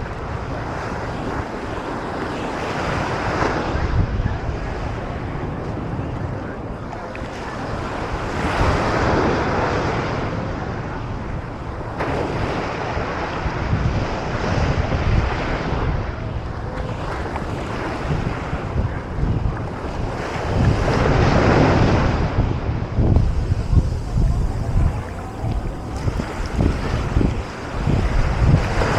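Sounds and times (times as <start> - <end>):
ocean surf breaking: 0.0 - 28.9
wind buffeting microphone: 0.0 - 28.9.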